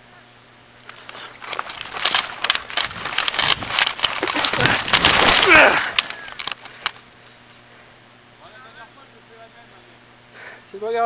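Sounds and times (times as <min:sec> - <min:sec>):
loud rustling and crackling: 0:00.8 - 0:07.1
sharp clicks: 0:00.8 - 0:07.5.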